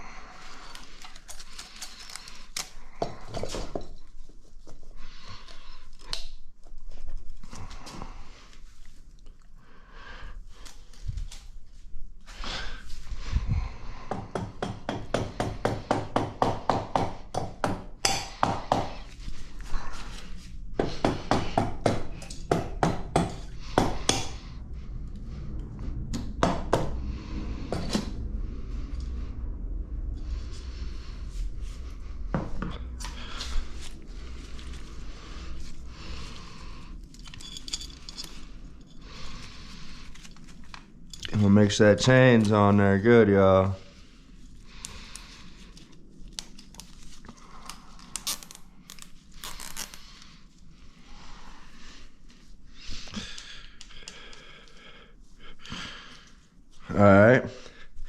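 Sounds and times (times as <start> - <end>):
metal tools clinking: 37.0 - 39.5.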